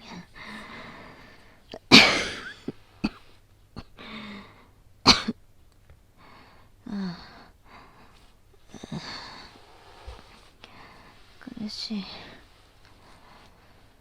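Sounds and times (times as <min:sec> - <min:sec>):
woman coughing: 0:01.8 - 0:04.0, 0:05.1 - 0:05.4.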